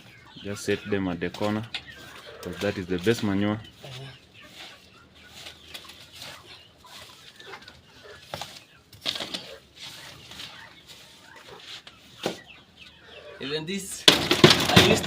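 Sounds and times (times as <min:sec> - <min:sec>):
chickens and chicks calling: 0:00.0 - 0:15.0
rustling: 0:01.3 - 0:12.4
sharp knocks: 0:14.0 - 0:15.0.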